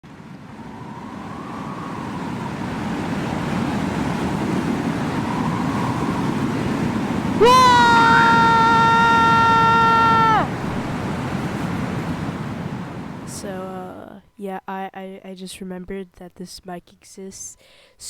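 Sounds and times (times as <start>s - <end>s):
wind blowing: 0.0s - 13.6s
faint wavering whistle: 0.6s - 2.9s, 4.8s - 7.4s.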